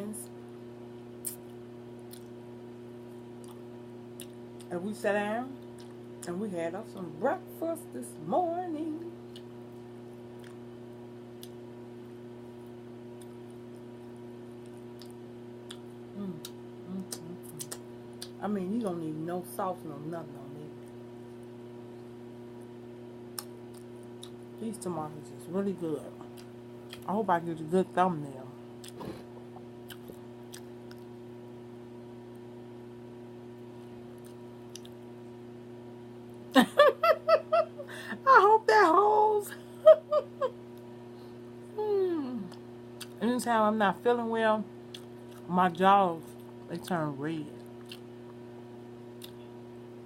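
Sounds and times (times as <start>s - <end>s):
low electrical hum: 0.0s - 50.0s
quiet chewing: 1.2s - 2.4s, 10.4s - 10.6s, 13.2s - 18.4s, 26.2s - 27.1s, 28.8s - 31.2s, 33.8s - 35.0s, 42.4s - 43.2s, 44.9s - 45.5s, 47.6s - 48.4s.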